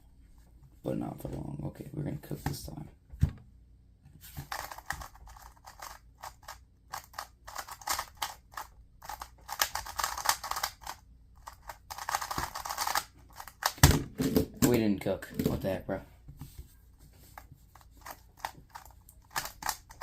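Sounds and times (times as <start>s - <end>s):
plastic puzzle cube clicking: 4.5s - 13.8s, 18.0s - 20.0s.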